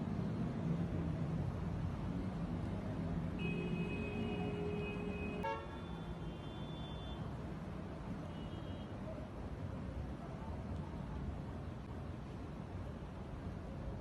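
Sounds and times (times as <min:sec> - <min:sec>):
vehicle horn: 0:03.4 - 0:07.2.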